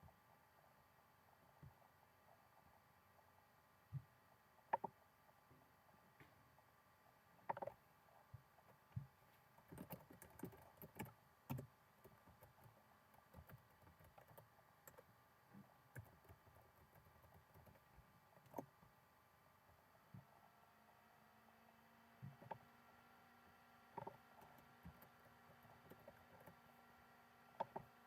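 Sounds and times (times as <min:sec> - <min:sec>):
typing on computer keyboard: 0:09.6 - 0:18.8, 0:24.0 - 0:26.6, 0:27.6 - 0:27.9.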